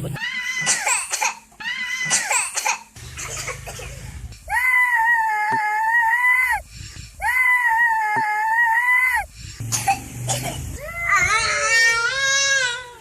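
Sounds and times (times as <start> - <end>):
young child crying: 4.5 - 6.6, 7.2 - 9.3, 10.8 - 13.0.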